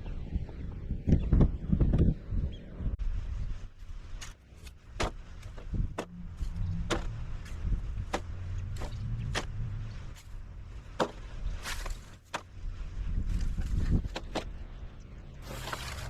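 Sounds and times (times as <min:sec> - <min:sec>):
diesel engine rumbling: 0:05.3 - 0:16.0.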